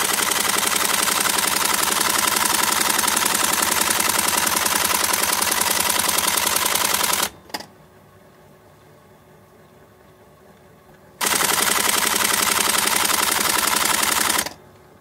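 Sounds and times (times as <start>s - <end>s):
typewriter spacing rattle: 0.0s - 7.4s, 11.2s - 14.6s
faint hum: 0.0s - 11.3s, 14.2s - 15.0s
typewriter click: 11.2s - 14.6s.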